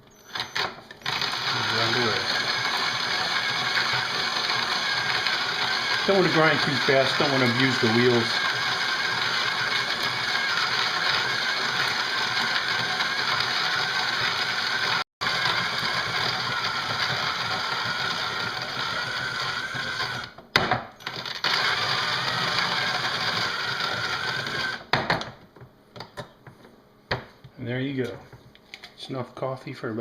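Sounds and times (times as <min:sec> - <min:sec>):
drill motor whine: 0:00.0 - 0:20.4, 0:21.0 - 0:24.9
coffee beans grinding: 0:00.2 - 0:20.4, 0:21.0 - 0:24.9.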